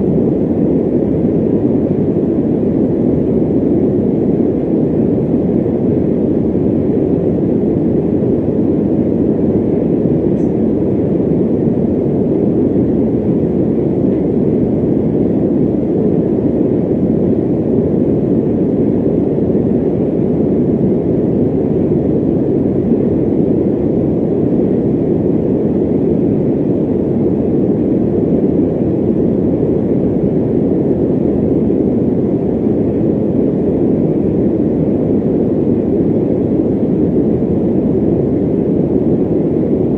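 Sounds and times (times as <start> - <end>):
electric fan running: 0.0 - 39.9.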